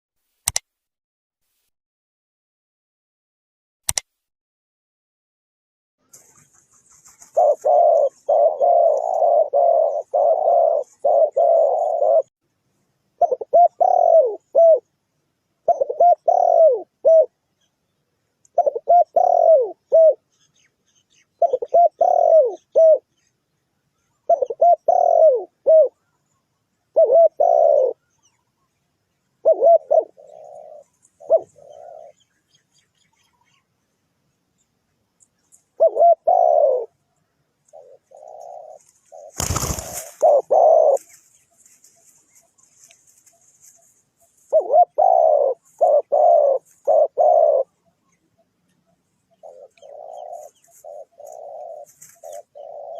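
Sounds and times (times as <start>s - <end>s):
dove cooing: 6.2s - 12.3s, 13.2s - 14.9s, 15.6s - 17.4s, 18.5s - 20.4s, 21.4s - 23.1s, 24.2s - 26.2s, 26.9s - 28.1s, 29.4s - 32.2s, 35.6s - 37.0s, 37.7s - 48.0s, 49.3s - 52.9s.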